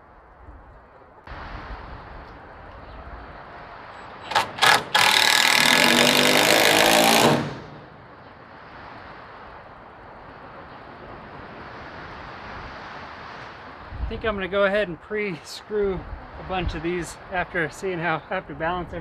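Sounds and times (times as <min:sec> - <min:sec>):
power driver driving screw into wood: 0:04.3 - 0:07.8
wind noise: 0:07.1 - 0:14.6, 0:15.8 - 0:17.6.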